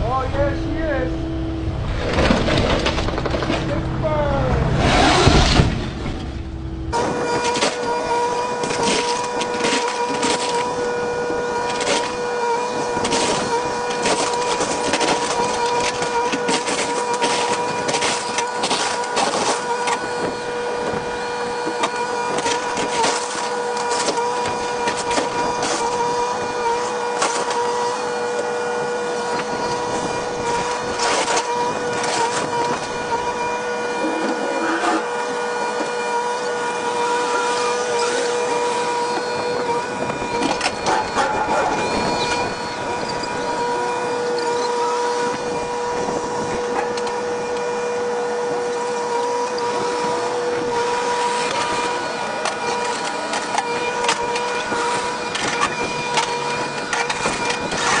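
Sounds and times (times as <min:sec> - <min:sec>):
excavator whine: 0:00.0 - 0:58.0
material cracking and crunching: 0:02.0 - 0:03.8.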